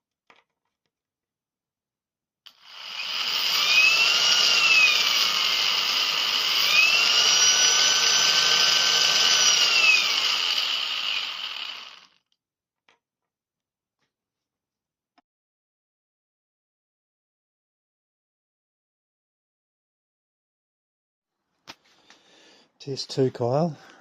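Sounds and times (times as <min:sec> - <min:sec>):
electric motor whine: 0:02.5 - 0:12.1.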